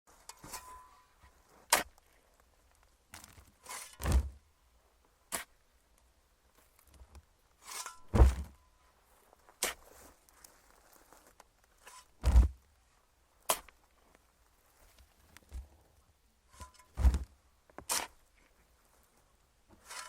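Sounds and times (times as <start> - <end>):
shovel scraping into soil: 0.1 - 2.0, 3.6 - 4.4, 5.3 - 5.6, 7.6 - 8.6, 9.6 - 10.1, 11.8 - 12.6, 13.5 - 13.8, 16.5 - 18.3, 19.7 - 20.0
heavy thuds: 8.0 - 8.6, 12.2 - 12.6, 17.0 - 17.3.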